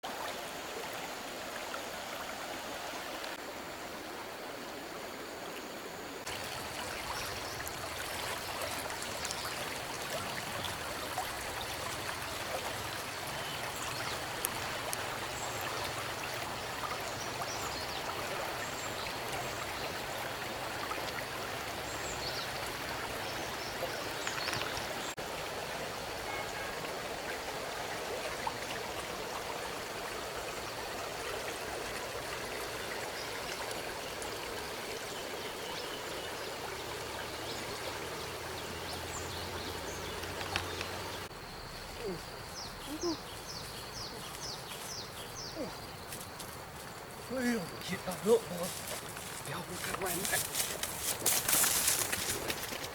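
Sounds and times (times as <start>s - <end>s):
stream water running: 0.0s - 52.9s
small splashes: 6.3s - 25.2s.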